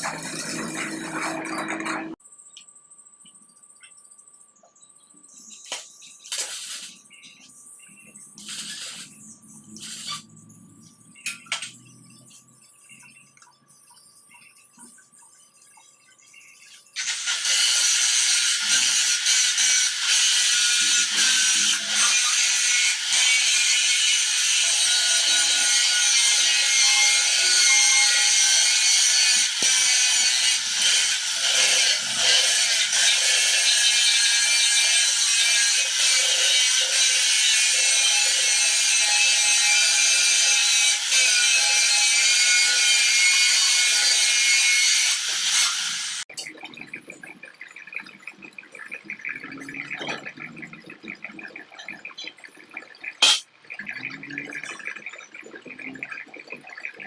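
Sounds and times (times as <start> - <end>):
welder arc crackling: 5.6 - 7.4, 8.4 - 10.3.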